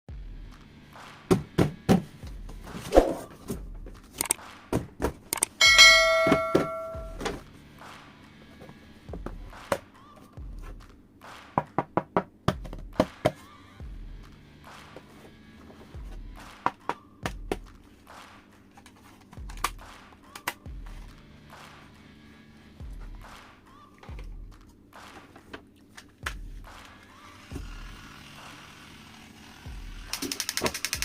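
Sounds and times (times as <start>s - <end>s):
bell-like ring: 5.6s - 7.2s
plastic toy pieces clicking: 30.1s - 31.0s.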